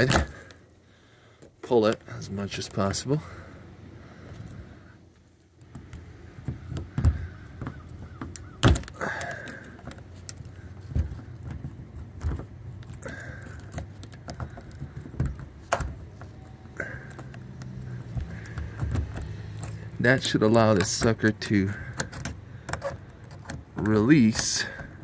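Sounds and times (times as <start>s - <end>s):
pliers clicking on metal latch: 17.1s - 24.9s.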